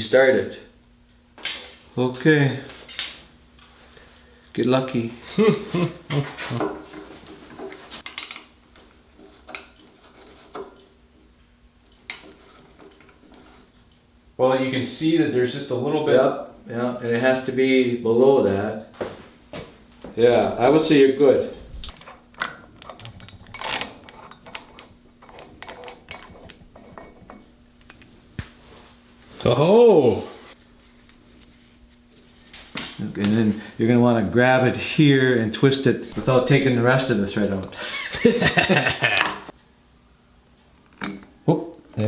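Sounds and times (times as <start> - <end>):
metal tool scrape: 1.4 - 3.3, 21.9 - 27.5, 30.2 - 33.1.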